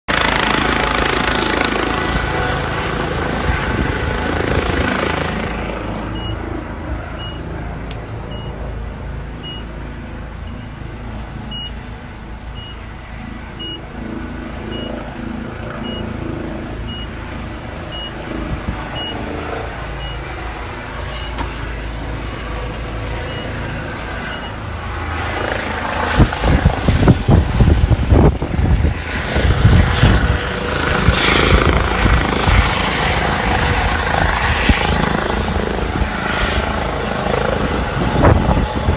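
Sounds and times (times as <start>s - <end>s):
helicopter turbine and rotor: 0.1s - 38.9s
rotor downwash buffeting microphone: 0.1s - 38.9s
short beeps: 6.1s - 6.4s, 7.2s - 7.4s, 8.3s - 8.6s.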